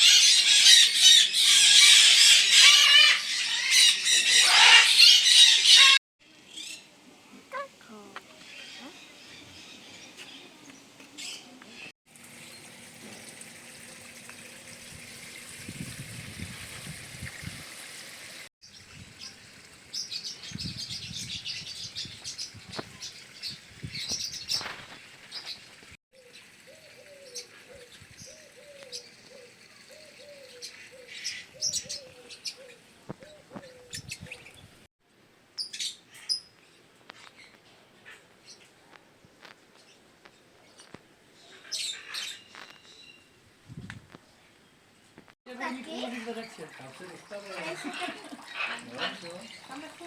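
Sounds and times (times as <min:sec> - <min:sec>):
birds chirping and calling: 0:00.0 - 0:06.9, 0:07.5 - 0:12.7, 0:18.6 - 0:34.8, 0:40.7 - 0:43.3, 0:45.6 - 0:50.0.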